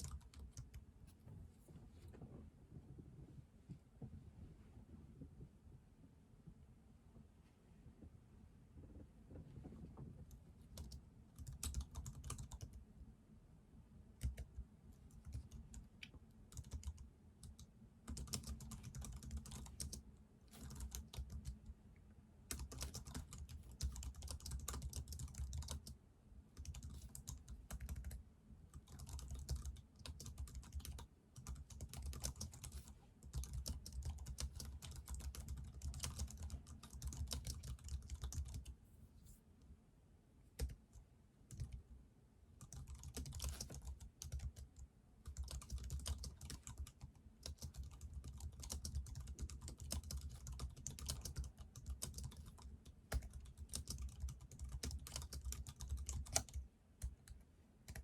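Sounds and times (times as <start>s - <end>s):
computer keyboard typing: 0.0s - 0.8s, 10.3s - 12.8s, 14.2s - 15.9s, 16.5s - 21.6s, 22.5s - 26.0s, 26.6s - 38.7s, 40.6s - 40.9s, 41.5s - 41.8s, 42.6s - 58.0s.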